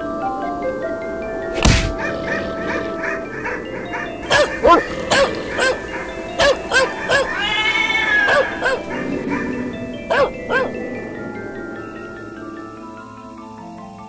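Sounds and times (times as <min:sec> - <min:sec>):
film score melody: 0:00.0 - 0:14.0
loud hit: 0:01.6 - 0:03.0
dog barking: 0:01.8 - 0:10.8.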